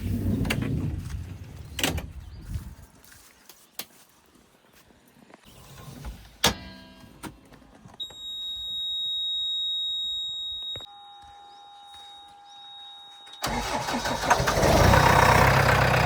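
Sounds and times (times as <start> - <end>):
sharp metallic clang: 6.4 - 7.3.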